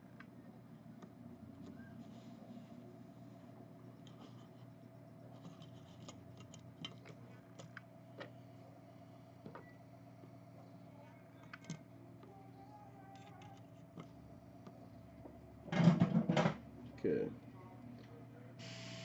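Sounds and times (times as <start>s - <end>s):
steady low hum: 0.0s - 19.0s
small tools clicking and tapping: 4.0s - 4.7s, 5.3s - 8.3s, 11.4s - 12.4s, 13.0s - 14.8s.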